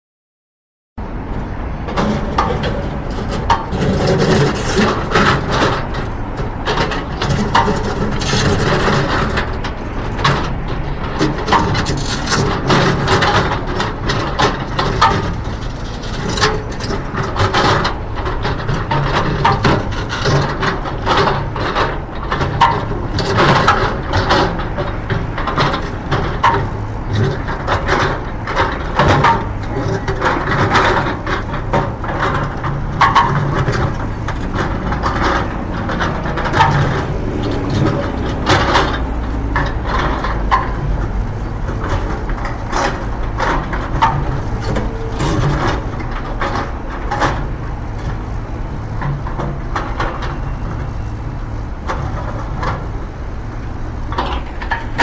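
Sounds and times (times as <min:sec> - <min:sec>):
heavy engine humming: 0:01.0 - 0:55.0
machinery knocking and clanking: 0:01.0 - 0:55.0.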